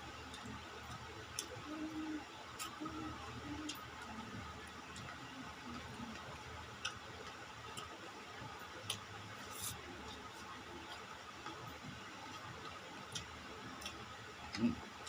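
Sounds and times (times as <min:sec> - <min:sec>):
low steady background noise: 0:00.0 - 0:15.0
chewing clicks and smacks: 0:12.3 - 0:15.0.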